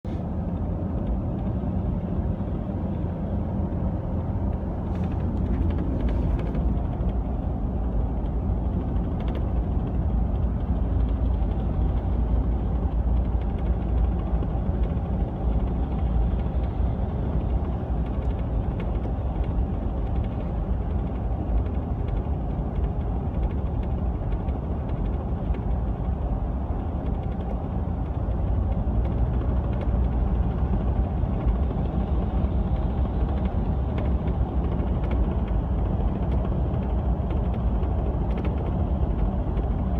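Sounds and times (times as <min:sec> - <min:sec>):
low road and engine rumble: 0:00.0 - 0:39.9
truck canopy rattling and creaking: 0:04.5 - 0:07.2.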